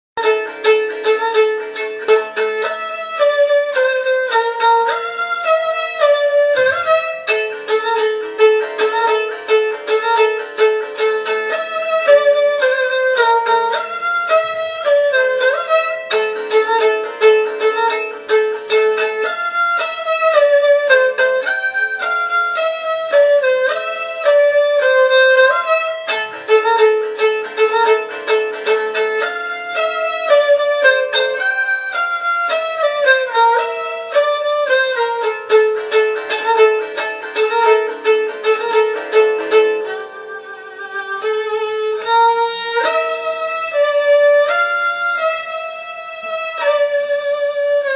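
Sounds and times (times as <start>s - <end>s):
ornamented string melody: 0.2s - 47.9s.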